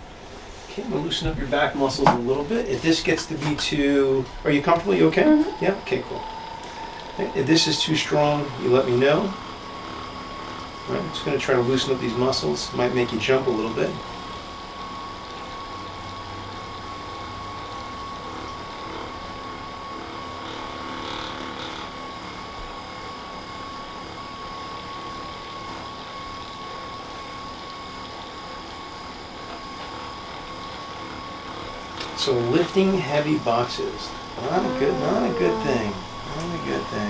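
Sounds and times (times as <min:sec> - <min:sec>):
electric massager motor buzz: 0:02.4 - 0:26.3, 0:29.8 - 0:37.0.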